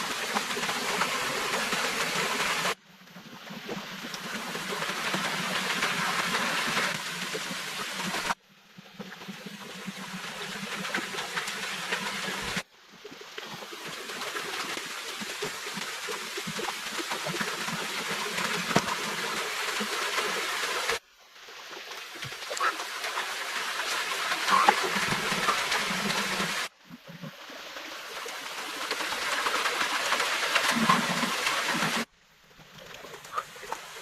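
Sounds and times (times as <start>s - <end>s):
stream water rushing: 0.0s - 2.8s, 13.7s - 26.8s, 27.4s - 34.0s.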